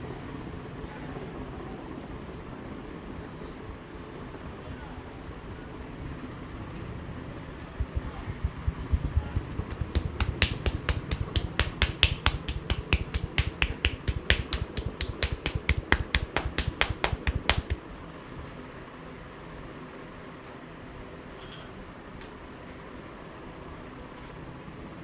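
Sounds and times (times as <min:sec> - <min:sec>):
percussive massage strokes: 0:07.7 - 0:17.8.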